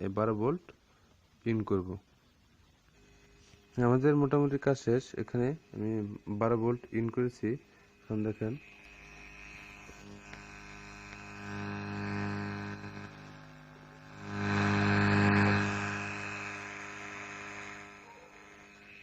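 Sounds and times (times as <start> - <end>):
buzzing mains hum from speaker: 0.0 - 19.0.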